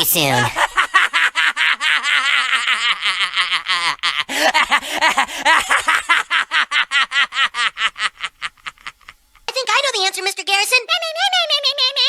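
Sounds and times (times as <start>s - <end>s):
cartoon boy laughing hysterically: 0.5s - 9.2s, 11.3s - 12.0s.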